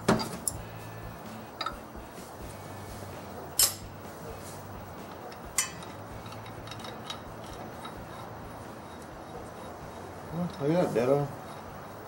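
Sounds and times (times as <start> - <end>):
metal tools clinking: 3.5 - 4.0, 5.0 - 8.3.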